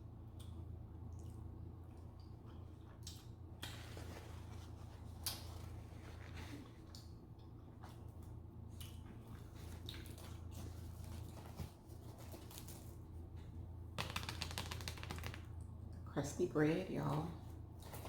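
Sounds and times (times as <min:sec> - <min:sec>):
low steady hum: 0:00.0 - 0:18.0
person chewing soft food: 0:00.2 - 0:11.5.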